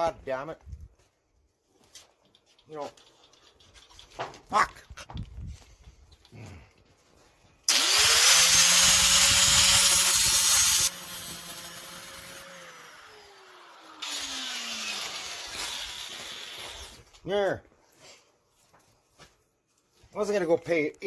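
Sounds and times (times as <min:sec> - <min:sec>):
motor winding down whine: 0:07.7 - 0:17.0
power tool hissing: 0:07.7 - 0:17.0.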